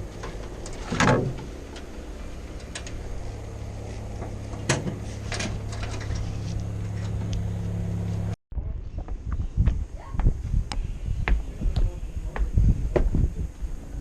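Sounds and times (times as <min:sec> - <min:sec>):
motor humming: 0:00.0 - 0:08.4.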